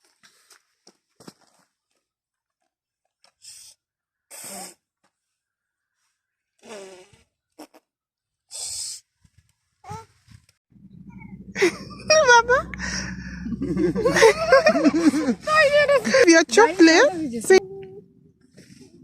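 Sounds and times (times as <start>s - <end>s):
short breaths: 12.7s - 13.5s.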